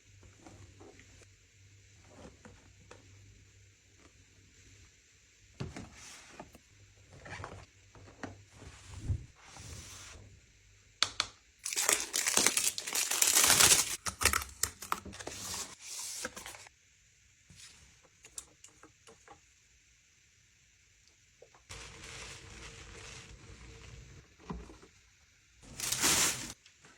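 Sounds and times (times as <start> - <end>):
packaging crinkling and rustling: 11.6 - 16.7, 25.6 - 26.6.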